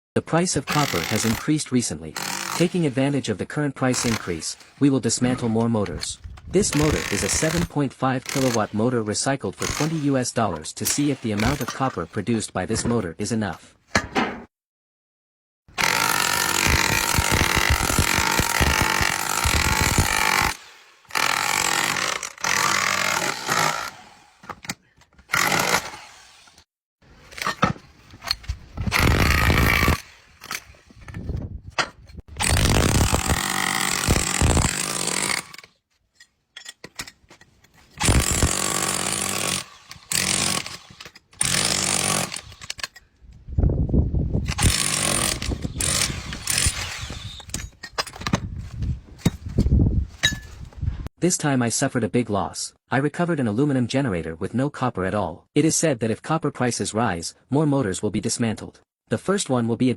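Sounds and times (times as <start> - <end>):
power tool running: 2.2 - 2.6, 15.8 - 24.4, 25.3 - 26.6, 28.9 - 30.6, 32.4 - 35.6, 44.5 - 47.5.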